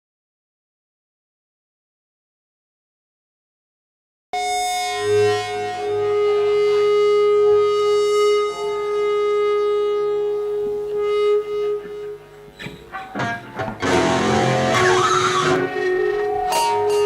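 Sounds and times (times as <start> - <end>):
long held synthesizer note: 4.4 - 17.0.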